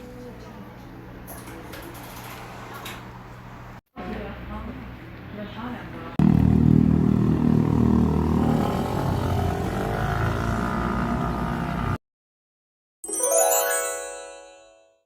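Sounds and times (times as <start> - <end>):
loud steady motor: 6.2 - 12.0.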